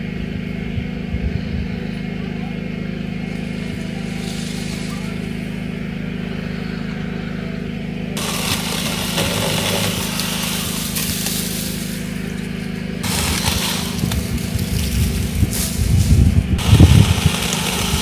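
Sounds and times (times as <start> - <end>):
pruning saw motor drone: 0.0 - 18.0
chain cutting branch hiss: 8.2 - 18.0.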